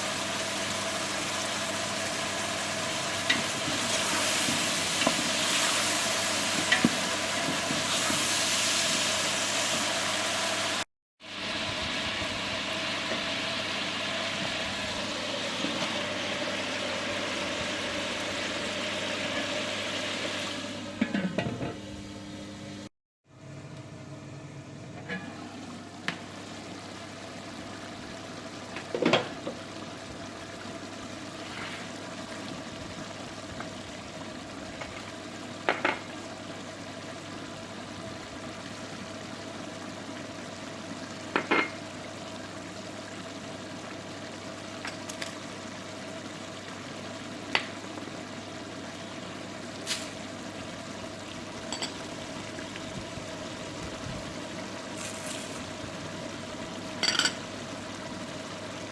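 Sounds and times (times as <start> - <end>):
food sizzling and bubbling: 0.0 - 22.2, 24.8 - 58.9
utensil clinking against pot: 57.0 - 57.4.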